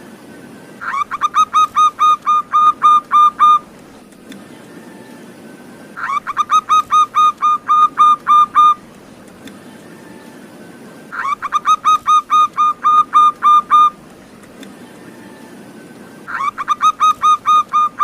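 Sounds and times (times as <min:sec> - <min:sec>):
dove cooing rapidly: 0:00.8 - 0:03.7, 0:06.0 - 0:08.9, 0:11.1 - 0:14.0, 0:16.3 - 0:18.0.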